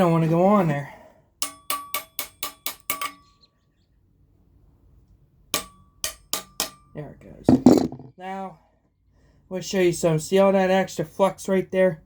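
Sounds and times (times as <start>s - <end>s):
sharp metallic knocks on pipe: 1.4s - 3.2s, 5.6s - 6.8s.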